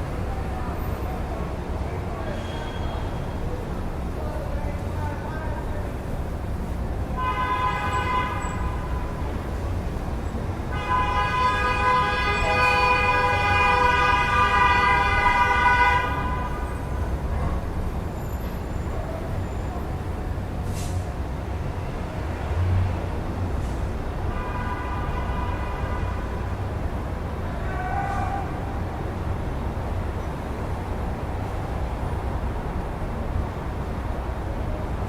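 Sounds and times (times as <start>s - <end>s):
city street traffic rumbling: 0.0s - 35.0s
vehicle horn blast: 7.2s - 9.0s, 10.7s - 16.7s, 24.3s - 26.5s.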